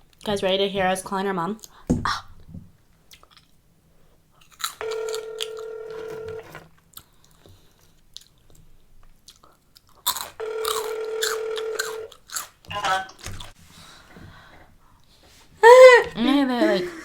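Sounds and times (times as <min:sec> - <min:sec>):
chips being chewed: 0:04.4 - 0:13.6
phone ringback tone: 0:04.8 - 0:06.6, 0:10.4 - 0:12.1.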